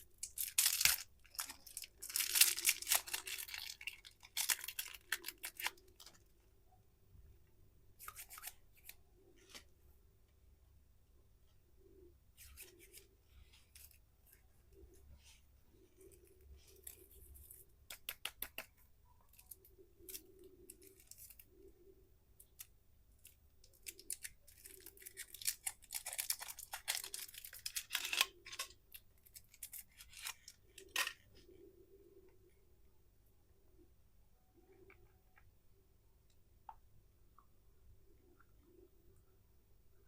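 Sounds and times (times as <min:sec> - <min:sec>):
plastic candy wrappers crinkling: 0:00.0 - 0:06.3, 0:22.4 - 0:31.2.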